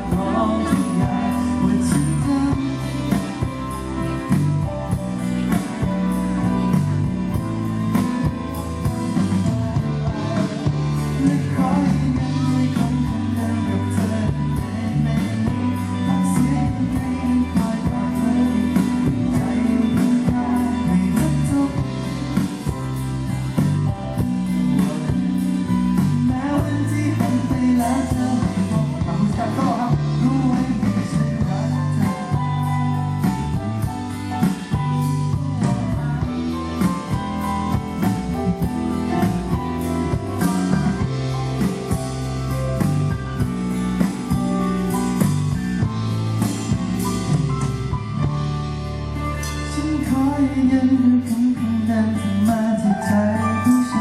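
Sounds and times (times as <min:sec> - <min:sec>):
person singing: 0:00.0 - 0:05.0, 0:09.0 - 0:41.9, 0:49.2 - 0:54.0
live band playing pop ballad: 0:00.0 - 0:54.0.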